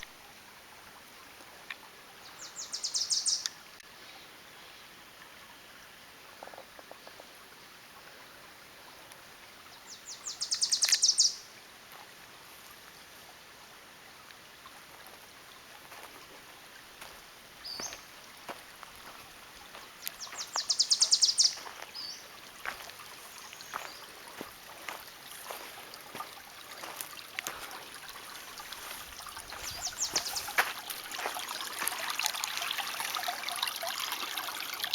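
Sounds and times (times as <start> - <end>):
creek running: 0.0 - 34.9
water trickling: 8.0 - 34.9.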